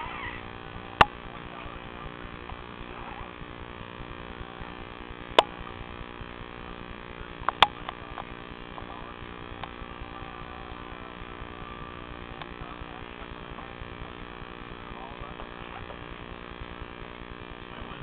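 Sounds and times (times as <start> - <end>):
room noise: 0.0 - 18.0
steady electrical hum: 0.0 - 18.0
sharp clicks: 7.4 - 8.4.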